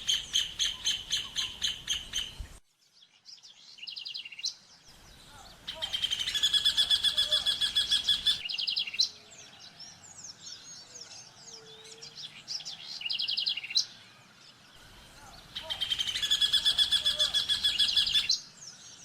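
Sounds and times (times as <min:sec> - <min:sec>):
soft scattered bird chirps: 0:00.0 - 0:19.0
bird singing fast repeated notes: 0:03.8 - 0:09.1, 0:14.8 - 0:18.5.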